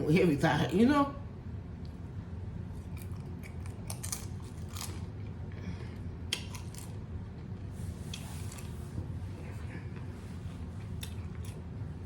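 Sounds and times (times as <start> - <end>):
steady low hum: 0.0 - 12.0
chewing crunchy chips: 2.8 - 7.1, 10.8 - 11.8.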